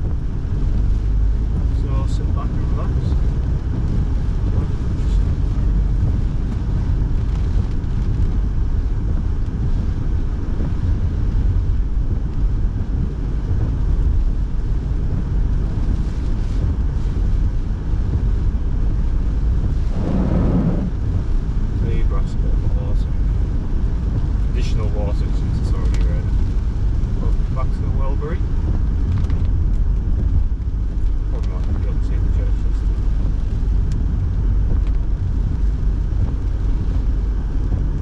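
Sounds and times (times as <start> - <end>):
car driving rumble inside cabin: 0.0 - 38.0
road noise: 0.0 - 38.0
heater fan blowing: 10.8 - 38.0.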